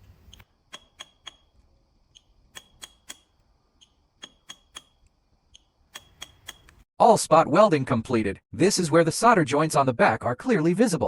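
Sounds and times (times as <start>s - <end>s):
spot welder clicks: 0.3s - 1.5s, 2.2s - 6.8s.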